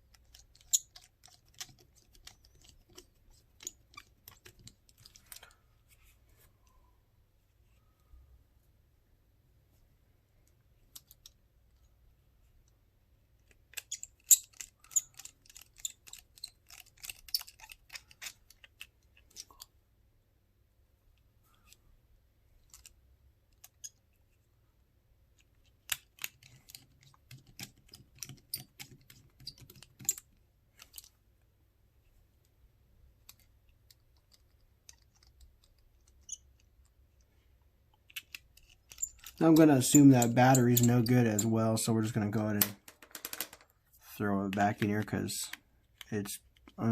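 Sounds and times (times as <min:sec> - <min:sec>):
small plastic clicks and ticks: 0:00.0 - 0:05.6, 0:10.4 - 0:11.9, 0:13.4 - 0:19.8, 0:22.6 - 0:24.2, 0:25.3 - 0:31.2, 0:33.2 - 0:41.5.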